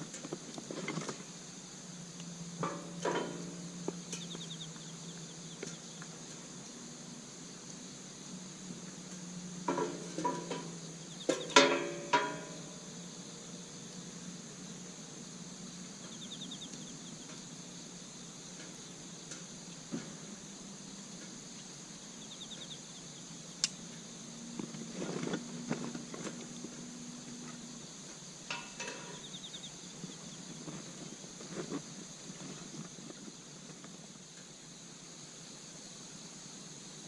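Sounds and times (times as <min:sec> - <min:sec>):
insects chirring: 0:00.0 - 0:37.0.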